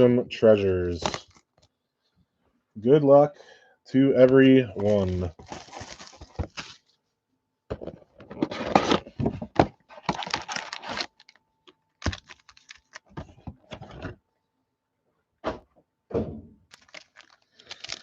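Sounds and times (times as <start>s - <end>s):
packs rustling and tearing: 4.8s - 6.9s, 9.8s - 13.9s, 16.7s - 18.0s.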